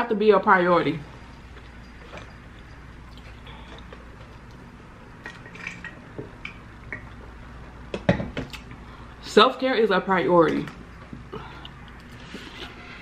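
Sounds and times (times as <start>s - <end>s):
person chewing food: 1.2s - 4.7s.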